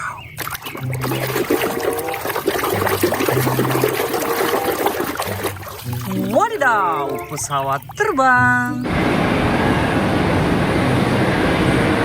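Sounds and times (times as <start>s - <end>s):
water running and splashing: 0.0s - 8.8s.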